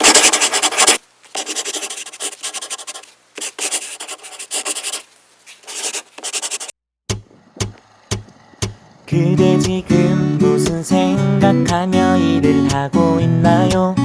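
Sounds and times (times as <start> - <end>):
scratchy rubbing noise: 0.0 - 6.7.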